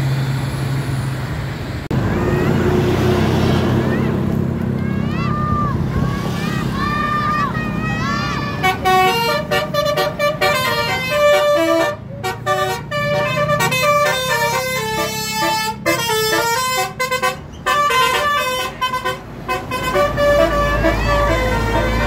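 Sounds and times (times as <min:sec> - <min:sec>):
multi-tone bus air horn melody: 0:08.6 - 0:22.0.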